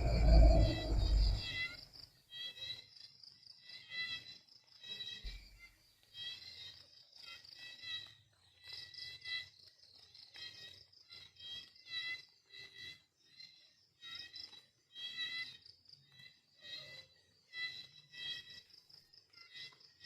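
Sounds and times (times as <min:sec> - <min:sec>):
high-pitched insect chirping: 0:00.0 - 0:01.6.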